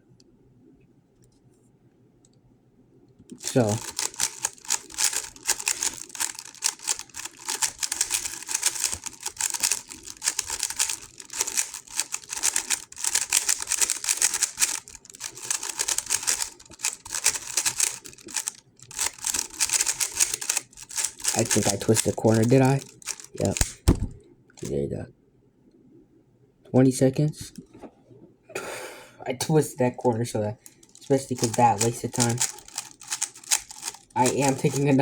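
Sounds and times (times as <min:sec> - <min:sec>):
plastic puzzle cube clicking: 0:03.3 - 0:23.8, 0:30.6 - 0:35.0.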